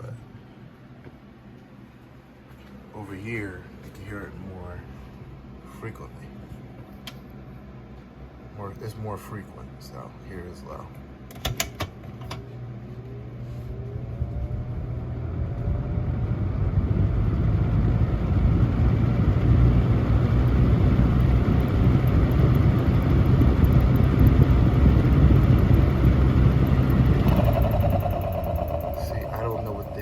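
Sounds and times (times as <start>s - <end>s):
fan air rush with low hum: 0.0s - 30.0s
box fan motor whine: 10.3s - 30.0s.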